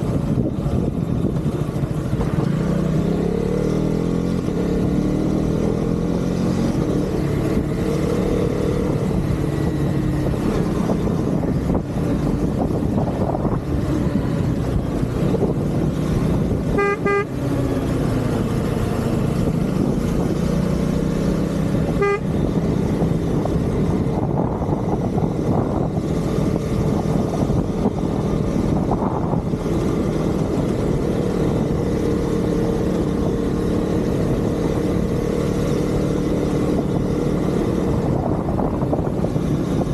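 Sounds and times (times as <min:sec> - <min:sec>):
motorcycle engine running: 0:00.0 - 0:39.9
road and wind noise: 0:00.0 - 0:39.9
vehicle horn beeping: 0:16.6 - 0:17.4, 0:21.9 - 0:22.5.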